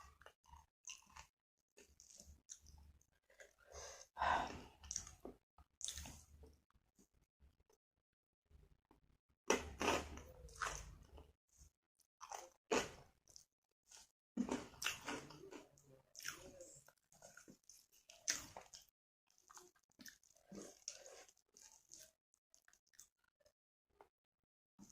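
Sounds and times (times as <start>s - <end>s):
person chewing crunchy food: 0.1s - 4.0s, 4.8s - 6.3s, 9.5s - 11.2s, 12.2s - 23.3s.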